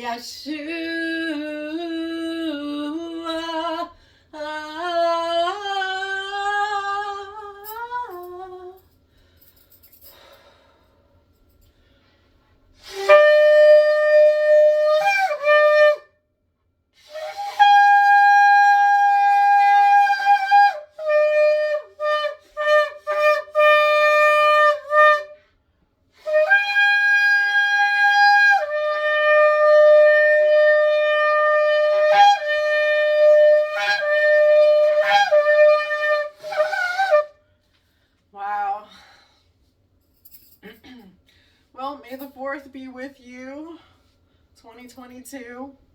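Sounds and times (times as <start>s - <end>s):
woman singing: 0.0s - 8.8s
shofar blasts: 12.8s - 16.1s, 17.0s - 25.4s, 26.2s - 37.4s.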